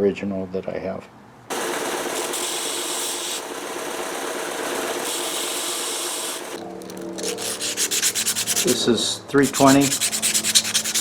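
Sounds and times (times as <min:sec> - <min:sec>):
faint motor hum: 0:01.5 - 0:11.0
metal grinding: 0:04.0 - 0:11.0.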